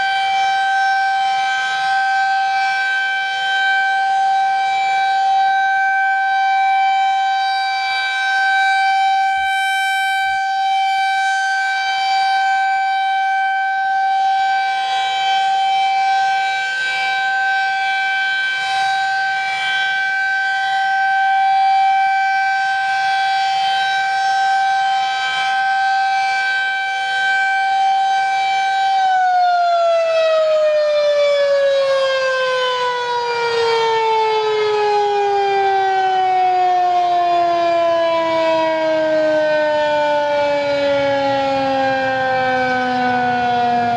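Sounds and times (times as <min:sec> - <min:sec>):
warning siren steady tone: 0:00.0 - 0:43.9.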